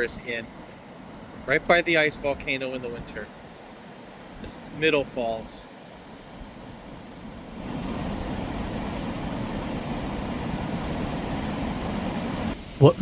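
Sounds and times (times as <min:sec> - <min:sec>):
waterfall roaring: 0:06.7 - 0:13.0.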